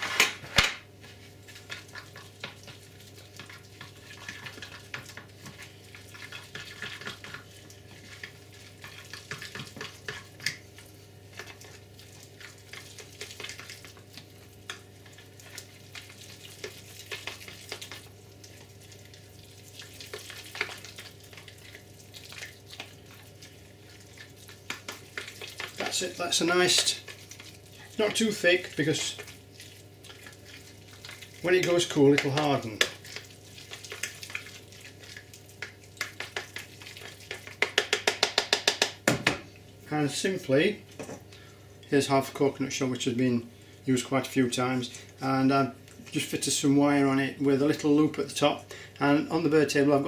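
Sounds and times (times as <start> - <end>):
gas boiler humming: 0.0 - 50.0
fork scraping sticky mix in dish: 1.0 - 18.9, 19.6 - 38.0.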